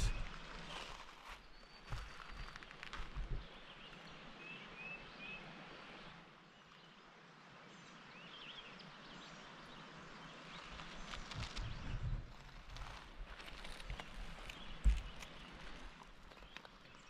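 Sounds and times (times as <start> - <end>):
footsteps on rocks: 0.0 - 3.6, 10.6 - 17.0.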